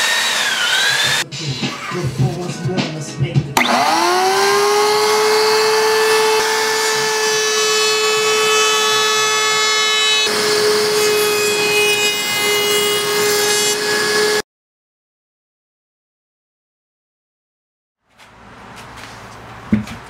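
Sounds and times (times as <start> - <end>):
power tool motor whining: 0.0 - 1.2, 3.6 - 9.5
power tool cutting wood: 0.0 - 1.3, 3.6 - 14.4.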